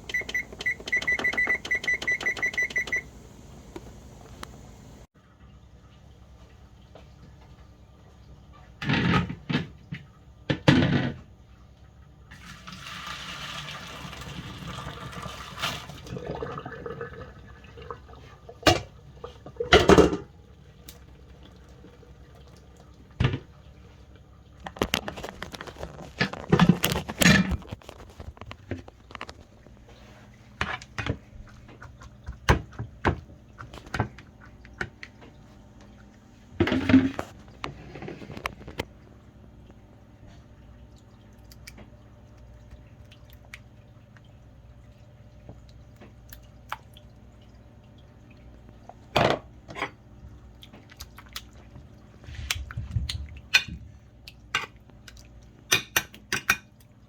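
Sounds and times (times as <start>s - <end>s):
water rushing into sink: 12.3s - 20.4s
pots and utensils clattering: 19.6s - 20.3s.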